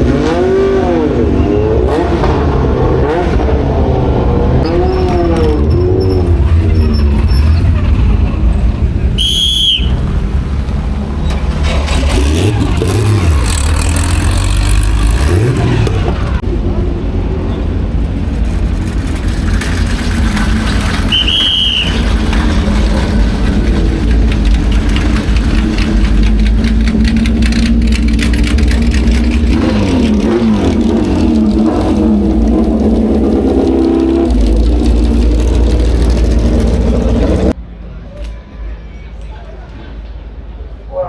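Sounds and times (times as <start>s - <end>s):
racing car engines revving: 0.0s - 37.6s.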